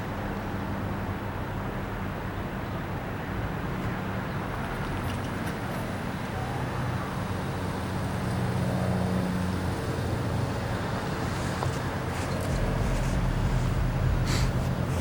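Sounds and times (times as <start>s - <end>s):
train engine drone: 0.0s - 15.0s
train rolling noise: 7.8s - 15.0s.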